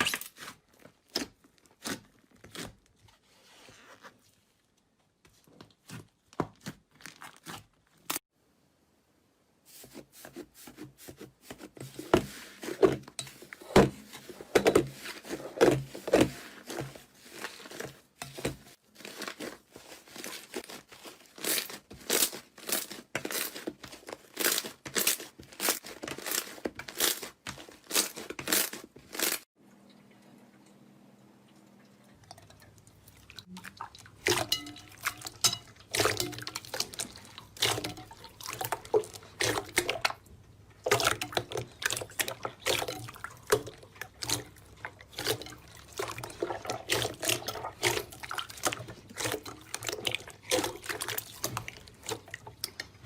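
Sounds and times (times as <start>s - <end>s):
brittle material crunching: 5.9s - 8.2s, 17.2s - 29.5s.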